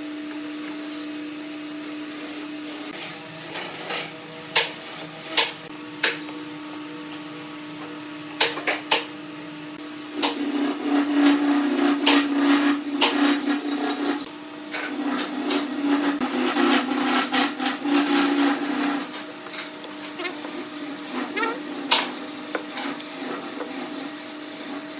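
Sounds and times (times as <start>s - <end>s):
power tool cutting wood: 10.1s - 24.9s.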